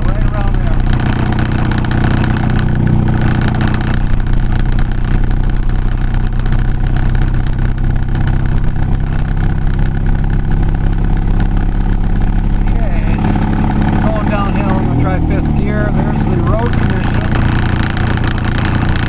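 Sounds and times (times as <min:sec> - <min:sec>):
road noise: 0:00.0 - 0:19.0
vehicle engine hum: 0:00.0 - 0:19.0.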